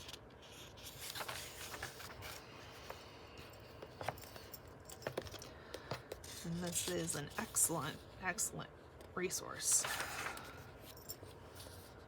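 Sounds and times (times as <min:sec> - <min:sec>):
book pages turning: 0:00.0 - 0:03.1, 0:09.8 - 0:12.0.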